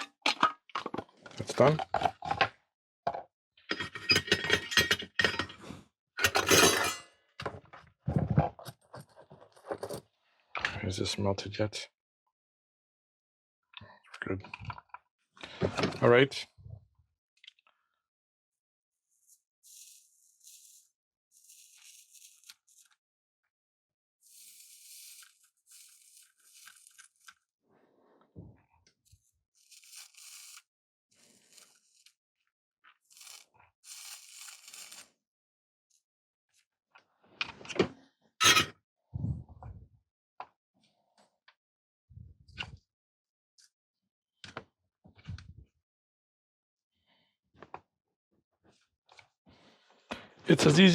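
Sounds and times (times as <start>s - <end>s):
tools clinking and scraping: 3.7s - 7.1s, 38.4s - 38.7s.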